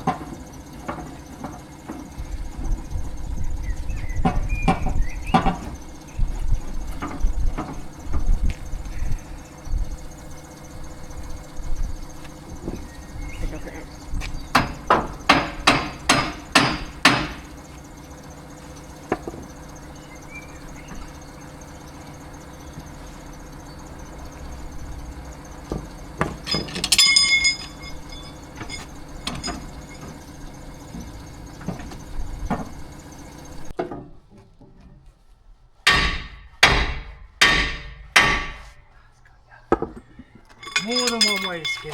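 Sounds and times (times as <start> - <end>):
low machine hum: 0.0 - 33.8, 37.8 - 41.9
hammer striking steel: 14.6 - 17.4, 35.9 - 38.7, 40.6 - 41.9
ringing metallic clang: 26.2 - 31.2, 40.5 - 41.9.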